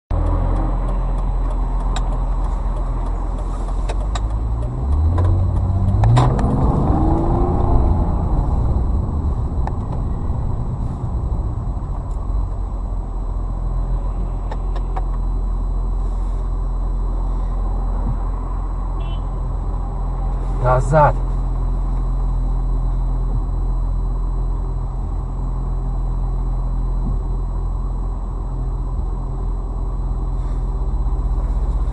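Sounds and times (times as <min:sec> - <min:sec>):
car engine accelerating: 0:00.1 - 0:15.9.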